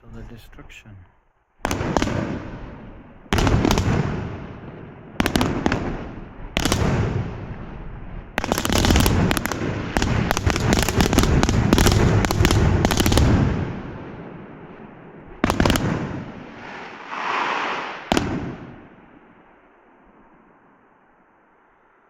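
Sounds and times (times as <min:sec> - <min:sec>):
fireworks bangs with rumble: 0:01.6 - 0:19.2
fireworks crackles: 0:01.6 - 0:20.9.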